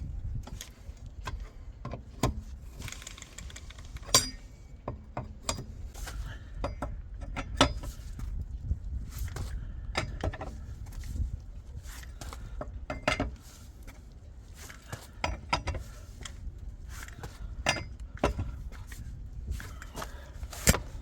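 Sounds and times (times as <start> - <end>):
low steady rumble: 0.0 - 21.0
metal tools clinking: 2.8 - 4.5.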